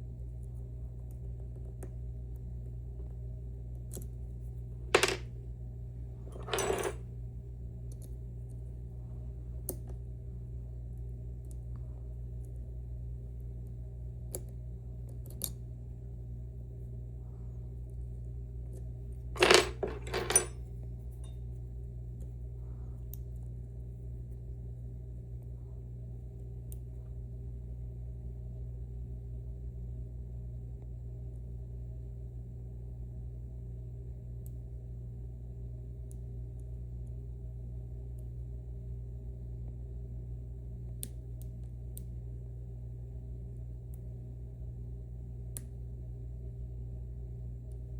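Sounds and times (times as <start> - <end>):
steady low hum: 0.0 - 47.9
metal lock picks clinking: 19.4 - 20.6.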